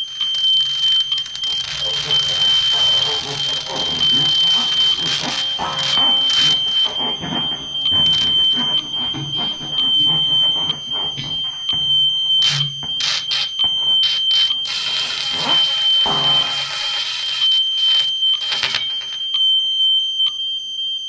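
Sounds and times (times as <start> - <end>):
sharp noise bursts: 0.0 - 11.7, 12.3 - 19.3
shrill single tone: 0.0 - 20.2
crackle: 0.0 - 20.3
shifting hiss: 0.8 - 17.5
low murmurs: 0.9 - 19.2.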